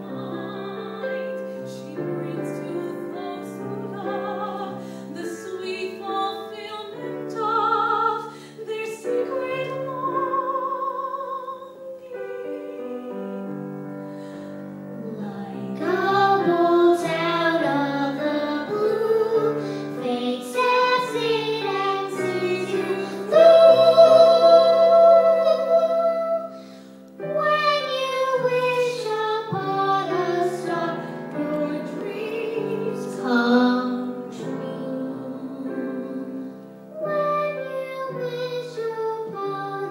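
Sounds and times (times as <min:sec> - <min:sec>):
woman singing with vibrato: 0:00.0 - 0:13.4, 0:15.1 - 0:26.6, 0:27.4 - 0:36.4
instrumental accompaniment: 0:00.0 - 0:39.9.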